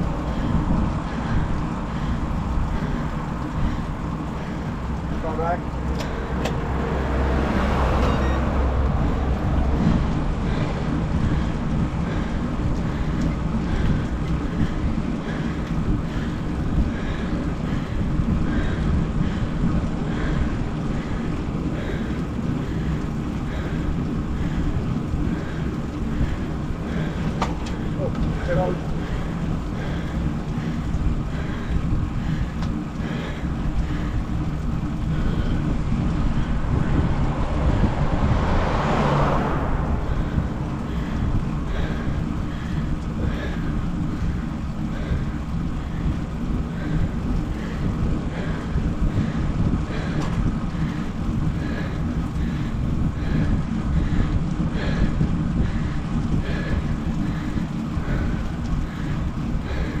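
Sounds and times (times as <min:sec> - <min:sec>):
wind rumbling on microphone: 0:00.0 - 1:00.0.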